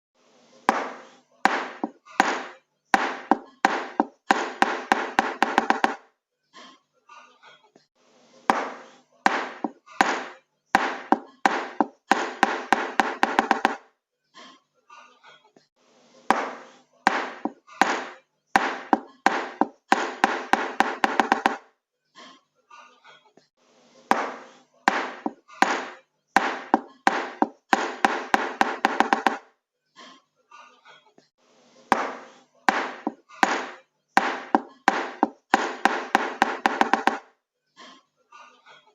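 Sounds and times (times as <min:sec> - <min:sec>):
hammer strikes ringing: 0:00.7 - 0:06.0, 0:08.5 - 0:13.8, 0:16.3 - 0:21.6, 0:24.1 - 0:29.4, 0:31.9 - 0:37.2.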